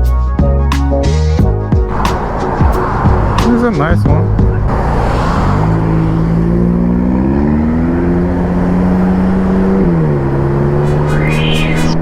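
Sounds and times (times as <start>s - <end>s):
rising whoosh: 1.9s - 7.3s, 10.6s - 12.0s.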